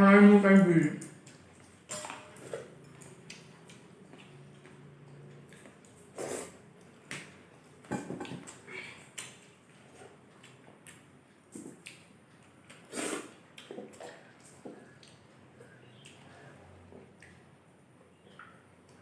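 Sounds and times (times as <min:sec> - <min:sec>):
people chewing and slurping: 0:00.9 - 0:17.6.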